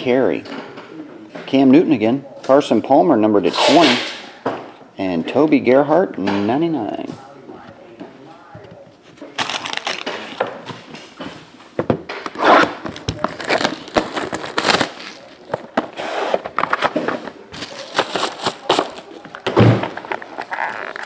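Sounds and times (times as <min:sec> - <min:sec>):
packaging crinkling and tearing: 0:09.3 - 0:10.5, 0:12.3 - 0:15.8, 0:17.6 - 0:21.0.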